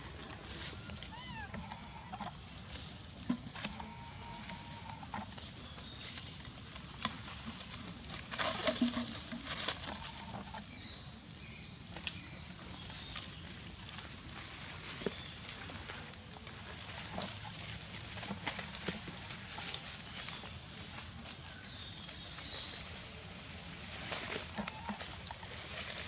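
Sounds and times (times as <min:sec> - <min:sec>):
monkey high chirps: 0:00.8 - 0:01.6
rustling foliage with snaps: 0:05.2 - 0:10.8.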